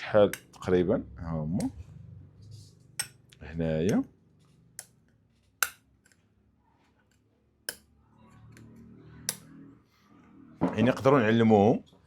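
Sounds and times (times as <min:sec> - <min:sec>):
steel snapping onto magnets: 0:03.0 - 0:03.2, 0:05.6 - 0:06.2.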